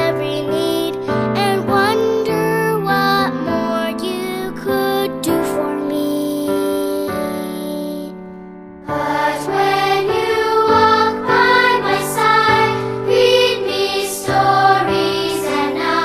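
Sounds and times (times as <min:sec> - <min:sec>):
song with singing voices: 0:08.9 - 0:16.0.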